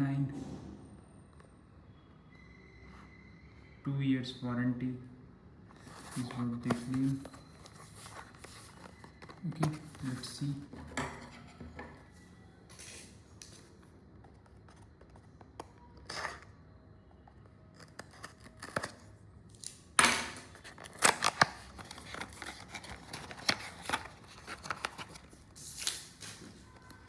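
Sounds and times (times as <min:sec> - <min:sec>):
packaging scratching and rustling: 0:05.7 - 0:11.6, 0:12.7 - 0:16.6, 0:17.2 - 0:19.6, 0:20.5 - 0:27.0.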